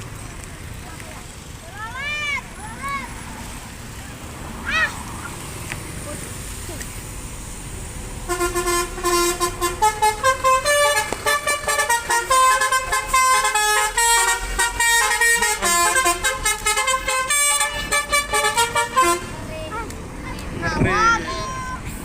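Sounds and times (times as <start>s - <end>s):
bus air horn playing a tune: 8.2s - 19.5s.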